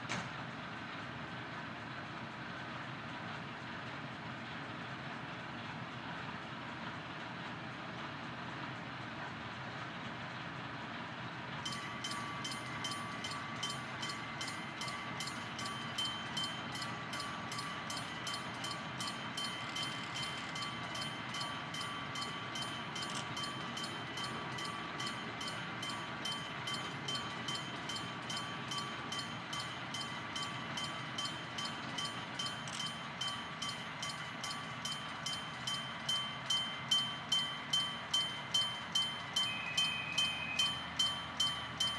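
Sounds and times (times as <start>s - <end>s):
diesel locomotive idling: 0.0s - 41.9s
level crossing bell ringing: 11.6s - 41.9s.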